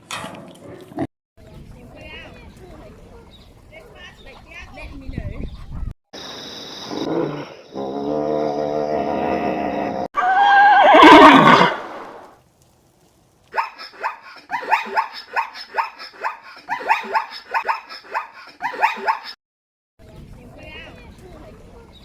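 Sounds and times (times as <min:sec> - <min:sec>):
animal held call: 0:10.2 - 0:12.2.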